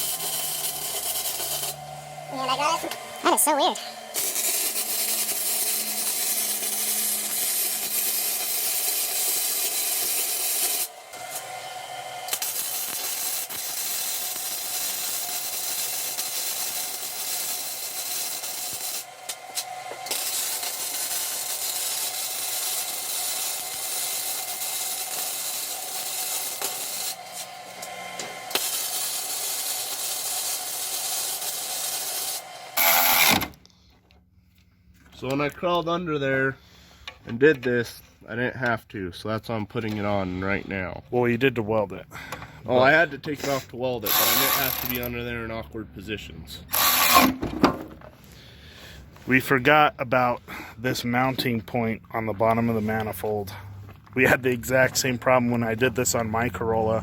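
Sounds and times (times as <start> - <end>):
welding arc sizzling and crackling: 0.0 - 11.5, 12.2 - 33.3, 43.4 - 45.0.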